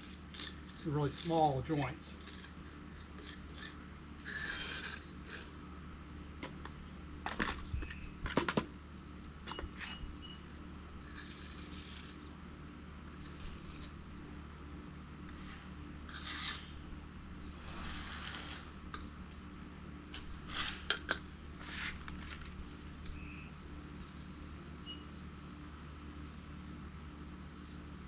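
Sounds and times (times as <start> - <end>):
trowel scraping mortar: 0.0 - 5.6, 11.1 - 12.3, 13.2 - 14.0, 15.3 - 16.8, 17.5 - 18.8, 20.1 - 22.6.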